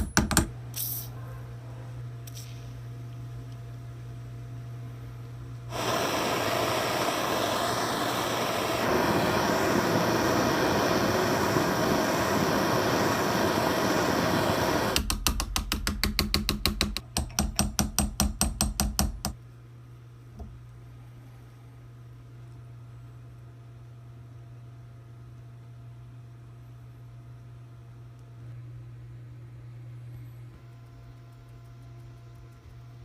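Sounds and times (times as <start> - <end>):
hammer tapping on metal: 0.0 - 0.5, 15.0 - 19.4
gas torch hissing: 5.7 - 15.0.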